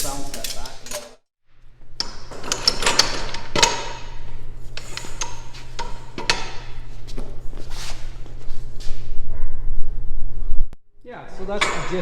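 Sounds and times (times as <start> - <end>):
low hum: 3.3 - 10.8.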